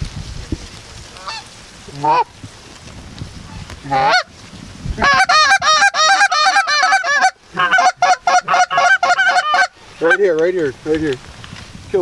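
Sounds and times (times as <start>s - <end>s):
goose honks and clucks: 1.2s - 2.3s, 3.5s - 4.3s, 5.0s - 10.2s.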